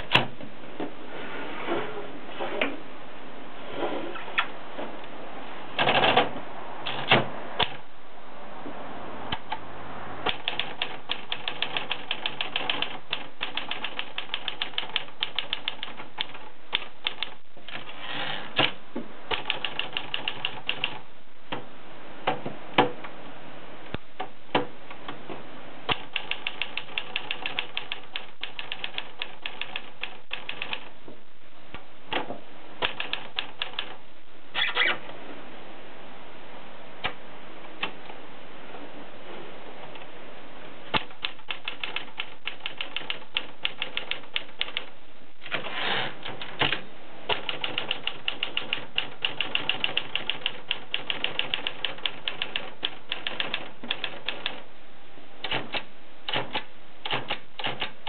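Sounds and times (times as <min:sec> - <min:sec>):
typewriter key strikes: 0:55.4 - 0:58.0.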